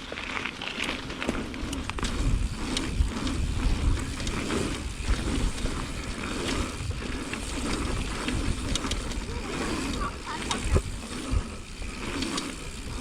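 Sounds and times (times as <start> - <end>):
bike rattling clicks: 0.0 - 13.0
bike tyres rolling on dirt: 0.0 - 13.0
wind rumbling on microphone: 1.4 - 13.0.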